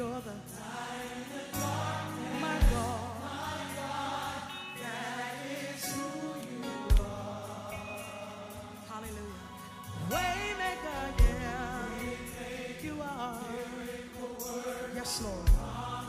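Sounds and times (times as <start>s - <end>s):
choir singing gospel music: 0.0s - 16.0s
deep bass hits: 11.2s - 11.7s, 15.5s - 15.9s.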